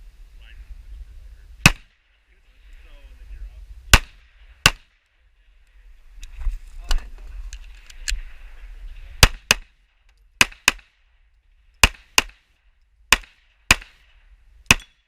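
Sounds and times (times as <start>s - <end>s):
pistol shots: 1.6s - 2.1s, 3.9s - 5.0s, 9.2s - 9.8s, 10.4s - 11.0s, 11.8s - 12.4s, 13.1s - 14.1s, 14.7s - 15.0s.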